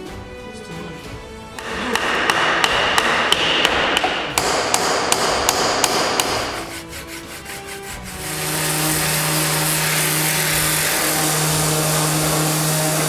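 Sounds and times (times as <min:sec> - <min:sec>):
quick hammer blows: 0:01.6 - 0:09.8.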